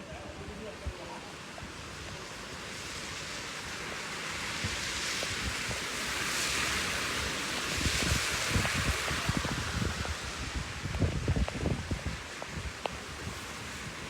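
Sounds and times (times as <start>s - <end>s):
wind gusting: 0.0s - 14.0s
wind buffeting microphone: 4.4s - 14.0s.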